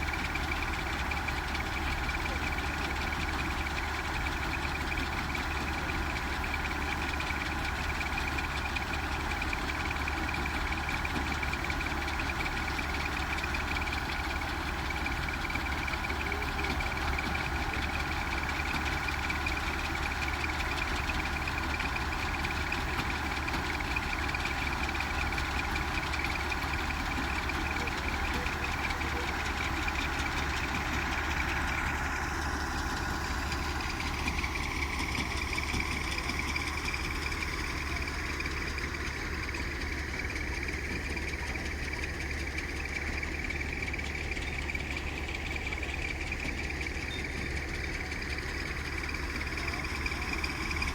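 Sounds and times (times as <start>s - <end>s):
harvesting machine engine running: 0.0s - 50.9s.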